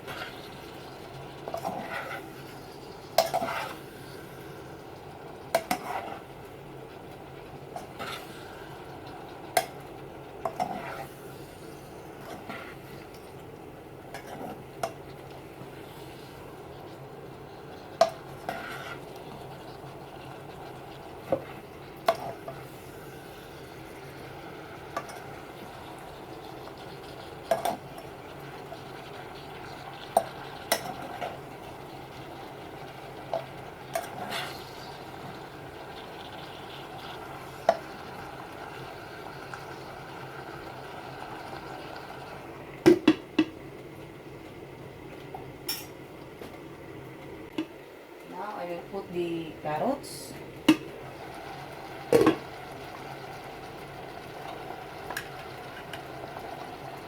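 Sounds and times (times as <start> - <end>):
utensil stirring in a pan: 0.0 - 42.5.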